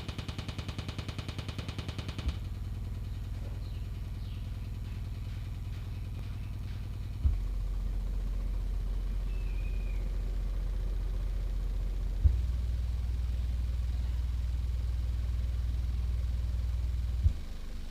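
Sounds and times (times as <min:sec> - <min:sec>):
rapid bass pulsing: 0:00.0 - 0:17.9
steady low bass tone: 0:02.2 - 0:17.9.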